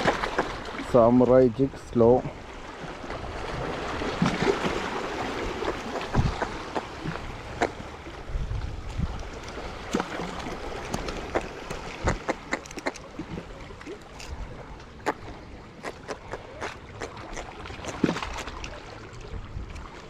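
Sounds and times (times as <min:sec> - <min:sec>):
low wind rumble: 0:00.0 - 0:12.6
water lapping: 0:00.0 - 0:20.0.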